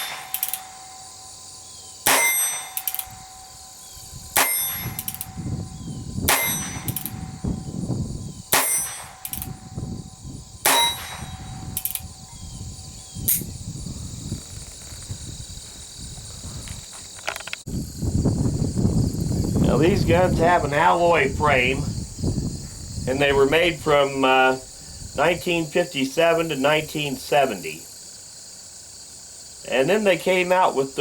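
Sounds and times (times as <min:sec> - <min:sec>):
revolver gunshots: 0:00.0 - 0:00.8, 0:02.0 - 0:03.1, 0:06.3 - 0:07.3, 0:08.5 - 0:09.6, 0:10.6 - 0:12.0
metallic ring: 0:00.0 - 0:07.8, 0:08.5 - 0:12.5
high insect drone: 0:00.0 - 0:31.0.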